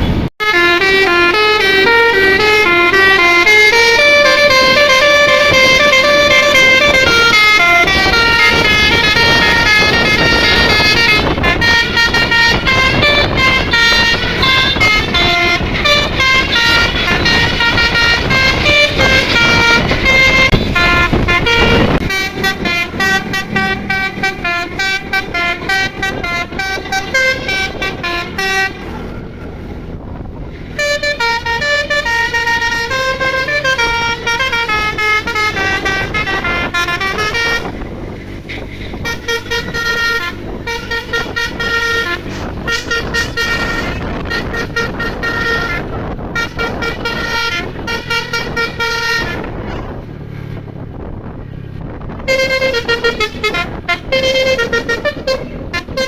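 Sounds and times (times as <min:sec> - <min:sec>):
musical bus horn tune: 0:00.0 - 0:51.2, 0:51.8 - 0:56.0.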